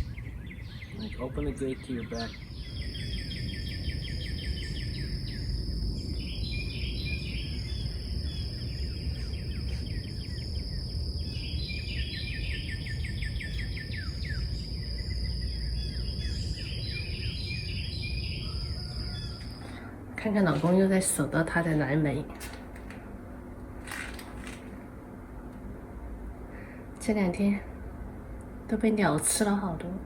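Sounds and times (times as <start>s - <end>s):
small birds chirping: 0.0s - 21.2s
low outdoor rumble: 0.0s - 30.0s.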